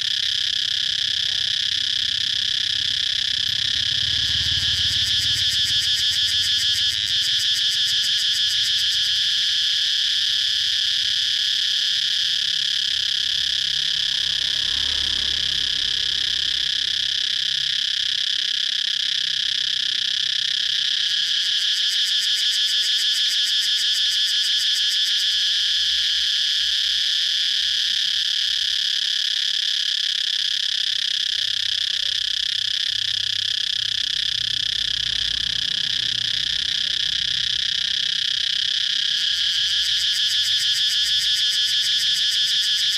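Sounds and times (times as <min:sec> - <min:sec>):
cicadas buzzing: 0:00.0 - 0:42.9.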